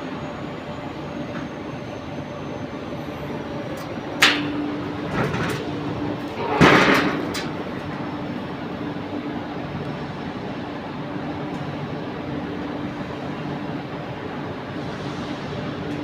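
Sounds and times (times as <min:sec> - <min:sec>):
industrial plant hum: 0:00.0 - 0:16.0
scraping clatter: 0:05.1 - 0:07.7.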